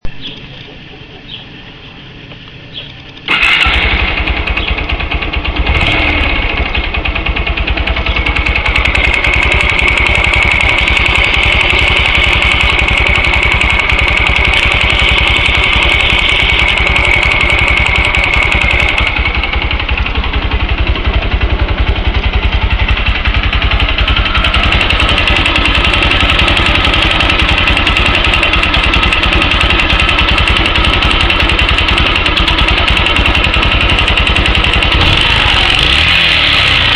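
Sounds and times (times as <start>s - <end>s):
motorcycle engine idling: 0.2s - 36.9s
engine knock: 3.3s - 36.9s.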